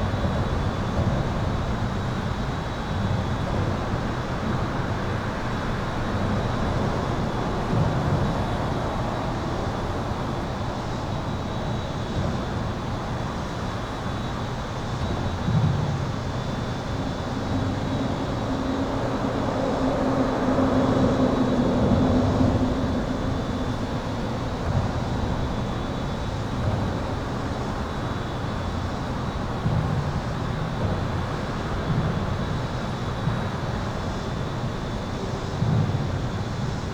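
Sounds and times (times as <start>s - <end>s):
highway traffic: 16.1s - 29.1s
vehicle passing with low drone: 16.9s - 25.5s.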